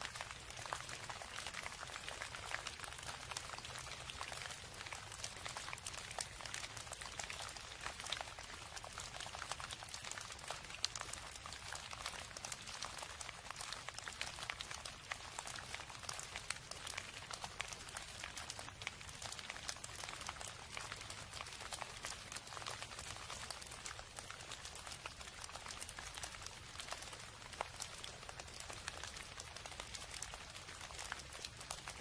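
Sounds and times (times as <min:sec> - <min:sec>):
rain pattering: 0:00.0 - 0:32.0.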